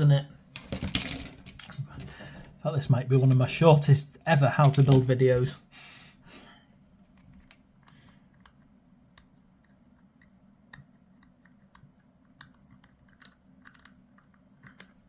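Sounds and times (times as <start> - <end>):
low steady hum: 0.0 - 15.0
plastic parts clicking and tapping: 0.6 - 2.6, 7.1 - 15.0.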